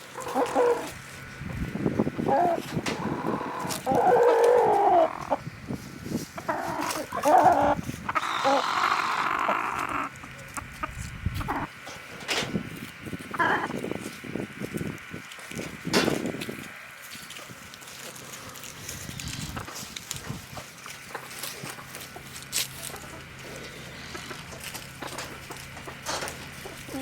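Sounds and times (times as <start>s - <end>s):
chickens clucking and squawking: 0.0s - 27.0s.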